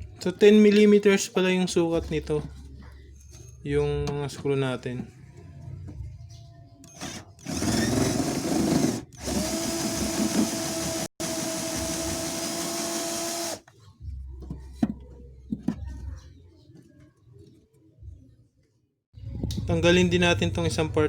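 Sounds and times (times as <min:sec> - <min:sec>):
cordless drill whirring: 0:07.0 - 0:13.6.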